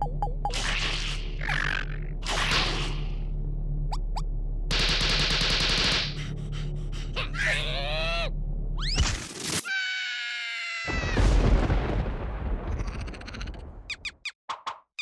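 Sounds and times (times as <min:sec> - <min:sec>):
cartoon squeals: 0:09.6 - 0:11.2
boom-like crash: 0:11.1 - 0:12.8.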